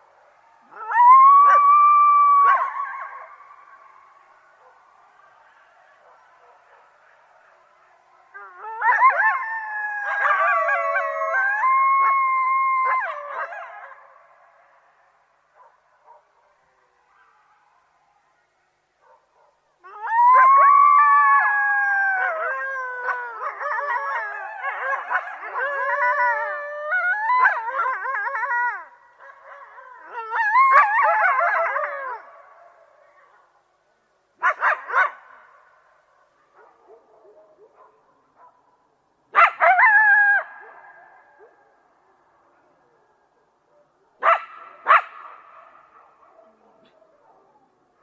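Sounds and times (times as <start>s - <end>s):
coyotes howling and yipping: 0.0s - 33.6s, 39.3s - 48.0s.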